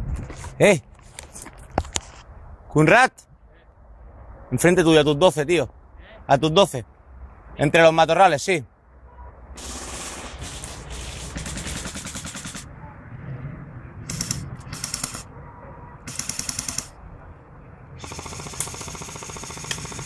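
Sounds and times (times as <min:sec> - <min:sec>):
airsoft gun firing full auto: 0:09.6 - 0:12.7, 0:14.1 - 0:15.3, 0:16.1 - 0:16.9, 0:18.0 - 0:20.0.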